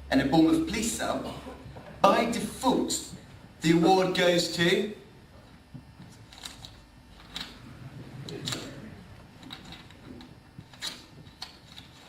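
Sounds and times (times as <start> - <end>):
low background murmur: 7.1 - 11.8.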